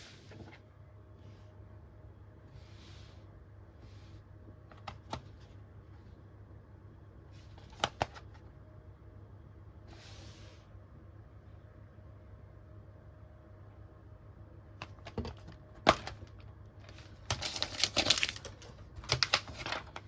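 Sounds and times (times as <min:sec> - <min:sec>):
steady low hum: 0:00.0 - 0:20.0
plastic case rustling: 0:14.8 - 0:20.0.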